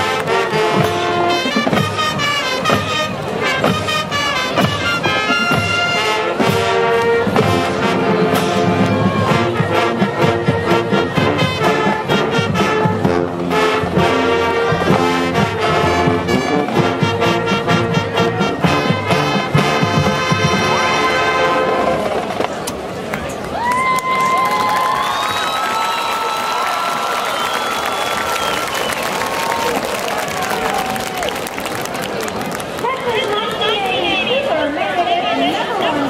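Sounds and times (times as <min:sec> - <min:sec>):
brass carrying the tune: 0:00.0 - 0:22.1.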